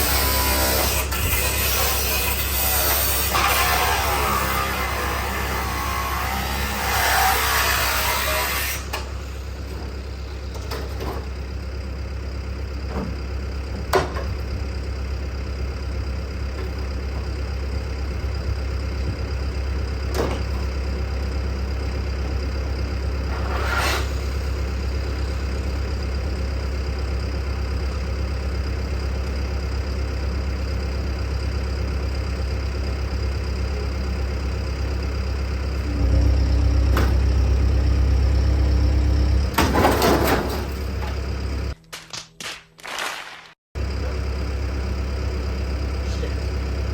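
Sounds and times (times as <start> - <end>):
engine idling: 8.8 - 23.5, 24.2 - 41.8, 43.8 - 46.9.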